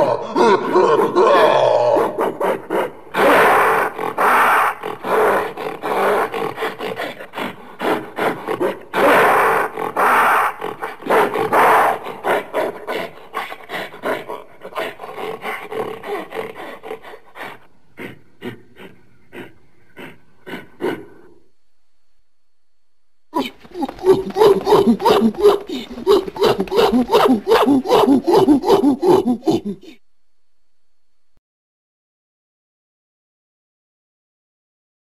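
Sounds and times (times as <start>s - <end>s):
gorilla long loud calls: 0.0s - 21.4s, 23.4s - 30.0s
gorilla short rapid calls: 23.4s - 30.0s.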